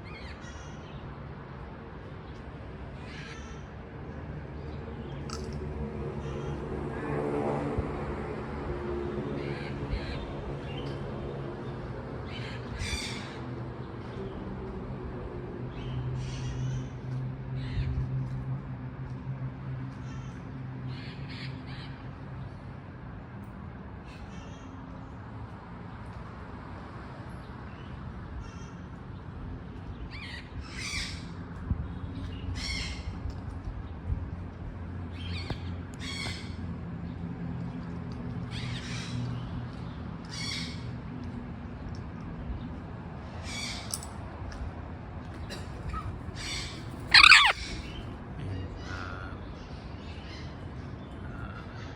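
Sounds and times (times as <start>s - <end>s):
macaw squawking: 46.4s - 48.0s.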